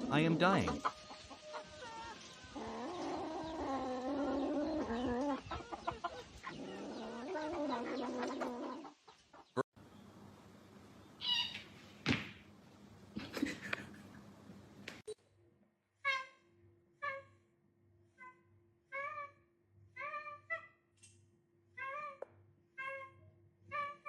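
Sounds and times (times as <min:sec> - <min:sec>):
cat yowling: 0:21.8 - 0:22.2, 0:22.8 - 0:24.0.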